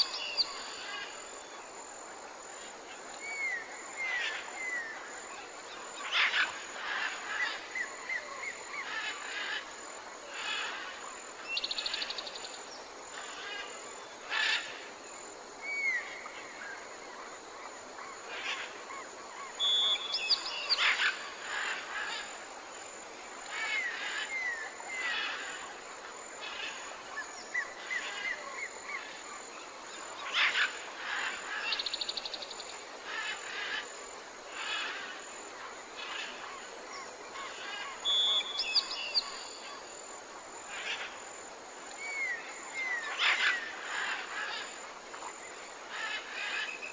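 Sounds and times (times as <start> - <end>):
steady background hiss: 0.0 - 46.9
tropical birds calling: 34.5 - 39.9, 41.9 - 46.9.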